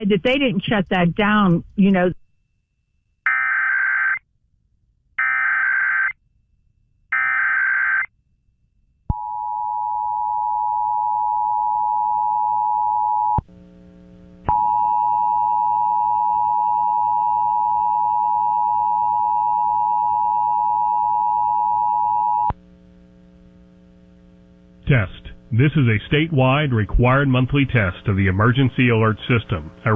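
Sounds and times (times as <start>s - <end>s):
low mains hum: 8.2s - 29.9s.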